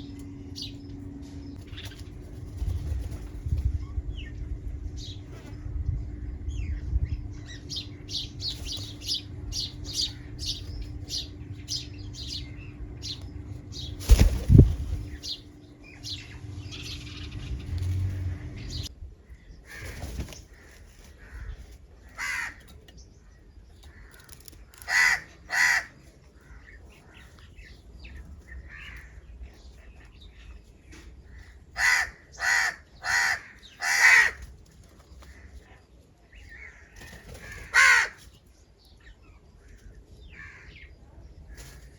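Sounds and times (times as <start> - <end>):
small birds chirping: 0.0 - 41.9
crows cawing: 19.6 - 22.8, 23.9 - 27.1, 28.6 - 29.2, 31.2 - 34.5, 36.6 - 38.3, 40.3 - 40.9.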